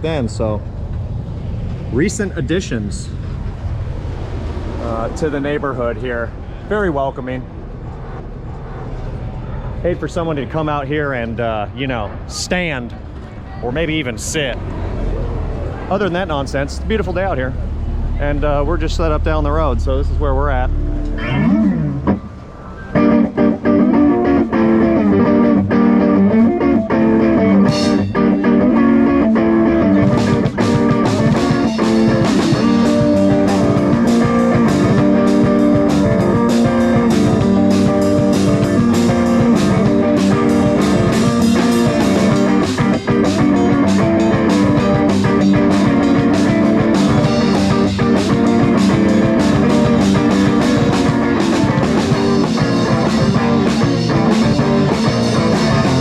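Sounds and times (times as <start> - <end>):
rock band playing: 21.0 - 56.0
drums and cymbals: 27.6 - 28.7, 29.9 - 56.0.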